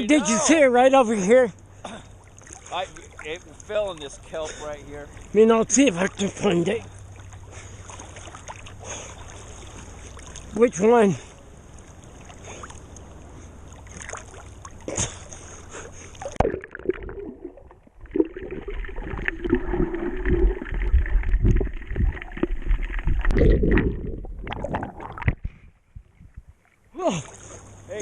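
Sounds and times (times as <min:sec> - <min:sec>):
seawater splashing: 0:01.2 - 0:25.6, 0:26.6 - 0:28.0
muffled underwater bubbling: 0:16.2 - 0:26.6.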